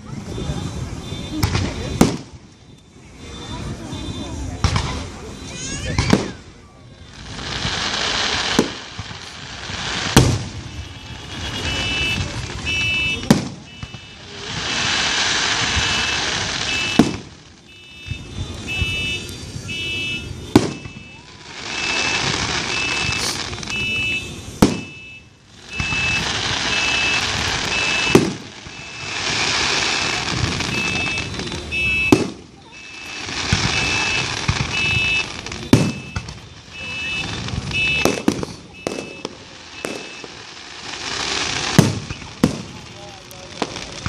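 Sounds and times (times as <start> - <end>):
crackling hiss of fireworks: 0.0 - 44.0
fireworks bursting with bangs: 0.0 - 44.0
electronic alarm beeping: 17.7 - 21.2, 23.7 - 29.1, 30.7 - 32.2, 32.8 - 38.1, 38.8 - 40.4.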